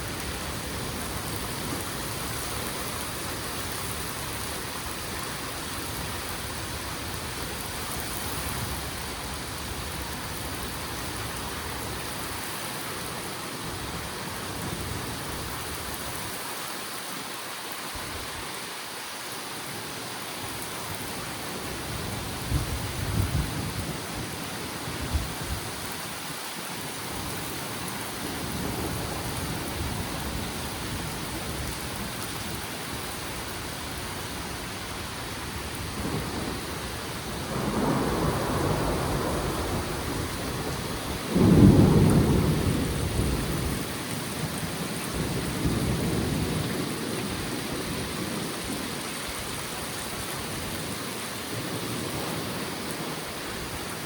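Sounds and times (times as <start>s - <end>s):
heavy rain pouring: 0.0s - 54.0s
low thunder rumbles: 35.4s - 48.4s.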